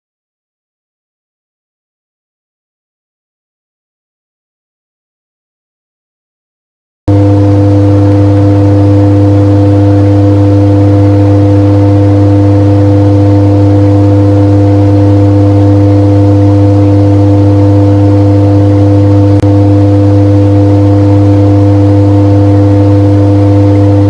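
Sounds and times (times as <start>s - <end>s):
loud steady hum: 7.1s - 24.0s.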